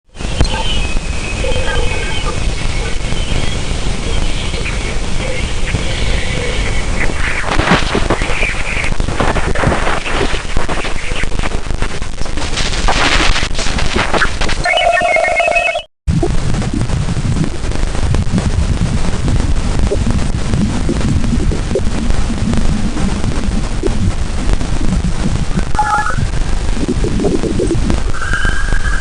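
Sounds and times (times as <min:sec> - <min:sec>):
crackling static with pops: 0:00.0 - 0:29.0
short beeping tones: 0:14.6 - 0:15.9.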